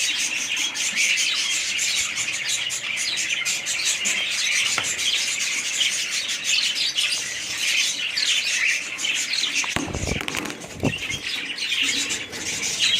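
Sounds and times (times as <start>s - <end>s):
cage birds chirping: 0.0s - 12.9s
wings fluttering: 9.6s - 12.1s.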